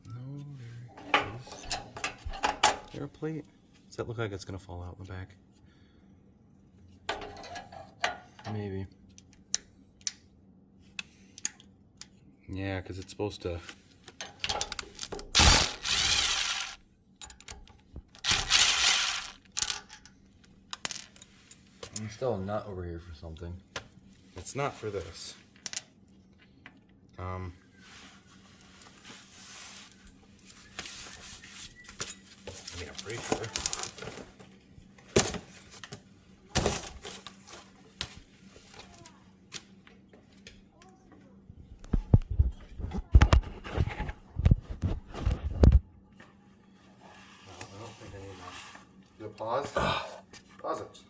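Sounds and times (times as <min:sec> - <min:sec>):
parts and tools clattering: 0:01.0 - 0:03.0, 0:07.1 - 0:08.6, 0:14.1 - 0:17.6, 0:18.2 - 0:20.2, 0:32.5 - 0:34.4
ratchet wrench clicking: 0:18.3 - 0:19.4.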